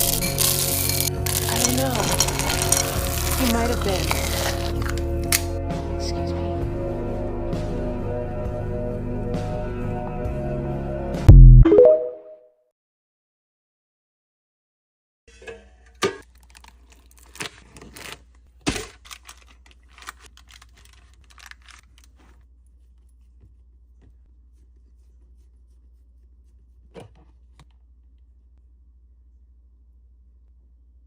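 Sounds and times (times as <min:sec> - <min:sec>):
handling clicks knocks and rustling: 0:16.4 - 0:22.4
low steady hum: 0:21.8 - 0:31.0.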